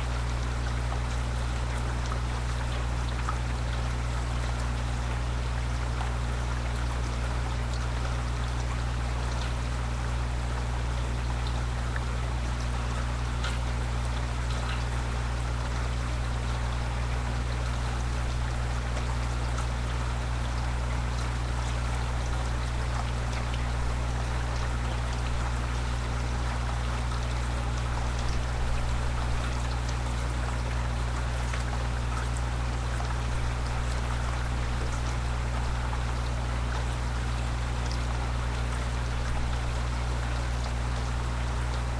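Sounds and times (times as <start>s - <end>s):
constant low hum: 0.0s - 41.9s
steady rain falling: 0.0s - 41.9s.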